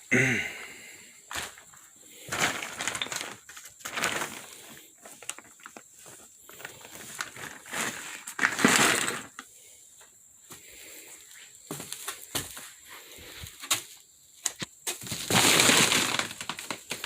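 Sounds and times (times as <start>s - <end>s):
crunching and rustling: 1.3s - 9.5s, 11.8s - 17.0s.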